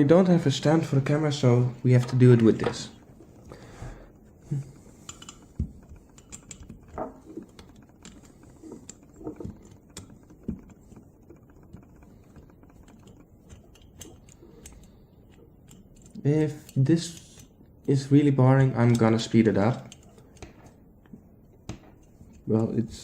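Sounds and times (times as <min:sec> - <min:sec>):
small metal parts clicking and tapping: 0:04.7 - 0:23.0.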